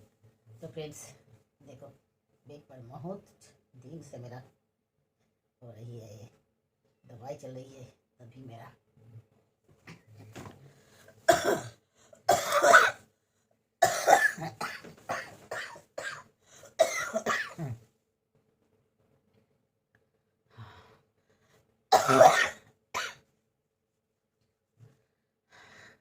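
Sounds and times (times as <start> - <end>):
person coughing: 11.3 - 13.0, 13.8 - 17.8, 21.9 - 23.2.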